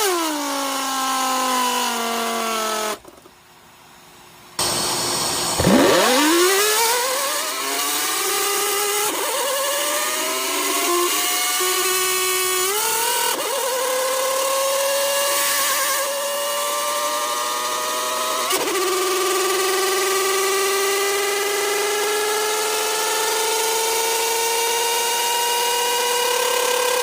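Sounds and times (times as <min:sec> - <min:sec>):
siren winding up: 0:04.6 - 0:11.6.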